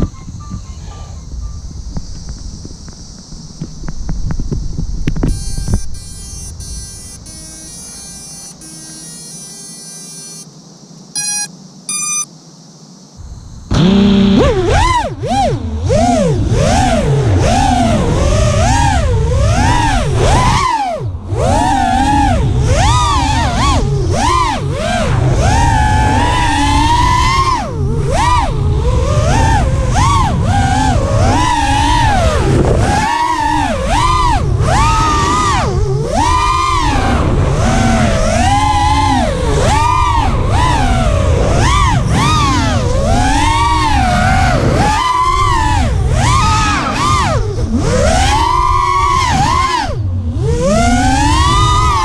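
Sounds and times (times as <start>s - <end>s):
short electronic beeps: 0.0s - 1.9s, 5.3s - 10.5s, 11.1s - 12.3s
quadcopter motors whining: 0.0s - 12.4s, 13.2s - 52.0s
constant low rumble: 0.0s - 52.0s.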